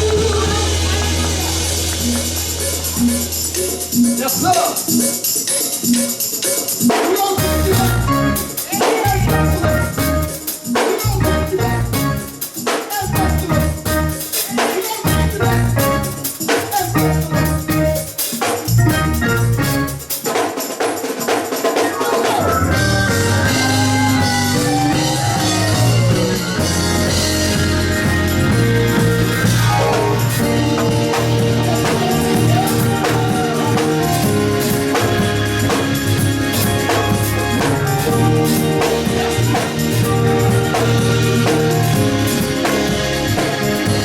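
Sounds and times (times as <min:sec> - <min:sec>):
held chords over steady bass: 0:00.0 - 0:04.2, 0:07.4 - 0:10.4, 0:11.1 - 0:12.3, 0:13.0 - 0:14.2, 0:15.0 - 0:16.2, 0:16.9 - 0:18.1, 0:18.7 - 0:20.0, 0:22.5 - 0:44.0
church band music: 0:00.0 - 0:44.0
tambourine: 0:00.0 - 0:44.0
drum kit hits: 0:22.3 - 0:44.0.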